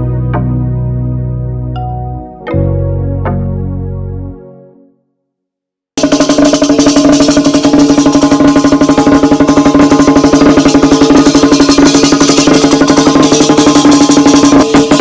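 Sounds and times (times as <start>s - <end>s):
music with fast steady beat: 6.0s - 15.0s.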